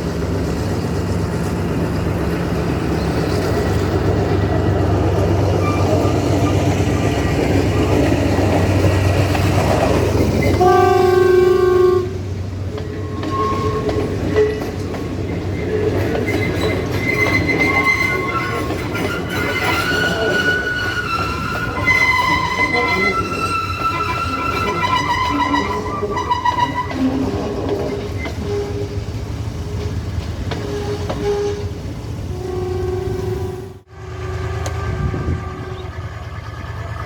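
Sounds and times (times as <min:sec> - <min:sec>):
diesel locomotive droning: 0:00.0 - 0:37.0
train running noise: 0:00.0 - 0:37.0
train horn blast: 0:10.6 - 0:12.3, 0:30.6 - 0:36.2.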